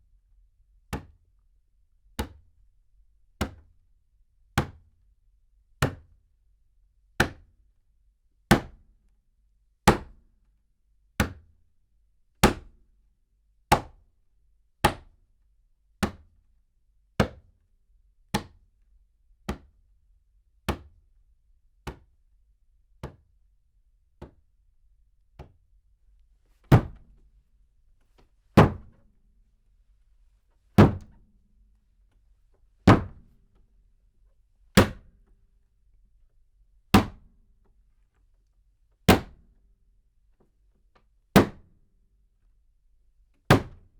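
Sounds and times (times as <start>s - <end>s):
slams on a table: 26.7s - 27.1s, 28.6s - 29.0s, 30.8s - 31.2s, 32.9s - 33.4s.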